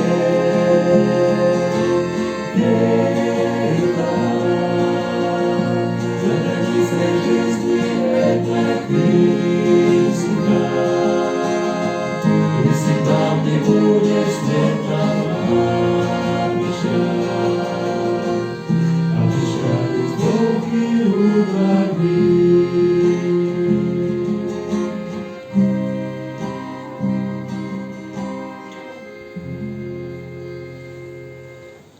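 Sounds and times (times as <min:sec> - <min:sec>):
voices singing: 0:00.0 - 0:27.0
sustained chords: 0:00.0 - 0:31.9.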